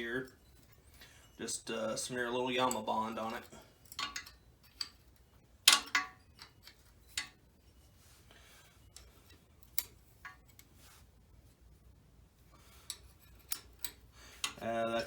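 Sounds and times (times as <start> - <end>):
hand tools clicking and clinking: 2.4 - 7.4, 12.8 - 15.0.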